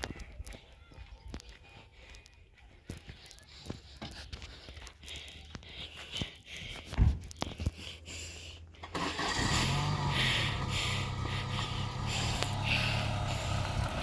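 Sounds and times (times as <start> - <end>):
vehicle engine starting and idling: 8.5 - 14.0.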